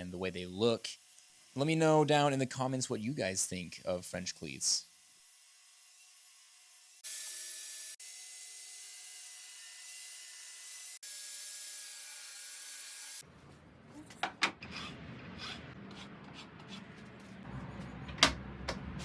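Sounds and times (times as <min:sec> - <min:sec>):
low hum: 0:13.2 - 0:19.0.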